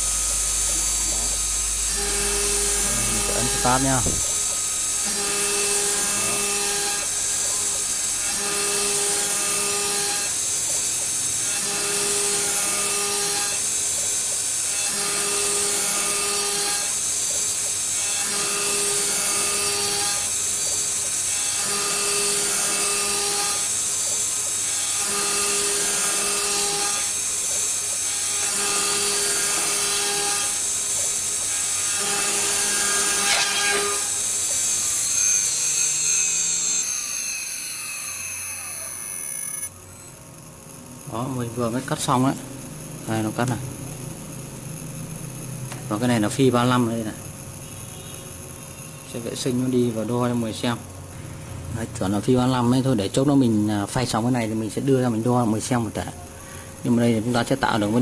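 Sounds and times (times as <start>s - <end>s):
humming tones: 0.0s - 9.0s
router spindle high-pitched noise: 0.0s - 51.0s, 52.0s - 58.0s.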